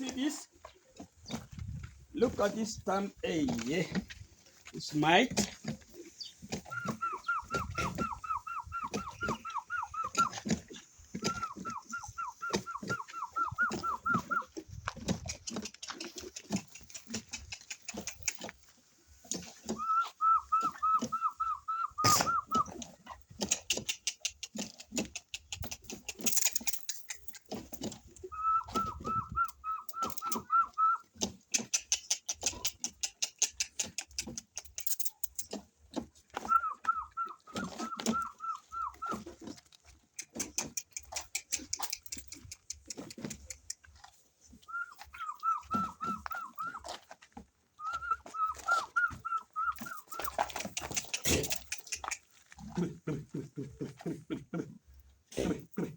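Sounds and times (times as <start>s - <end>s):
chickens warbling trill: 5.9s - 18.5s, 19.4s - 34.6s, 36.4s - 39.6s, 44.6s - 55.0s
scattered clicks: 15.0s - 18.6s, 23.4s - 27.9s, 29.9s - 35.5s, 39.9s - 44.0s, 49.6s - 52.4s.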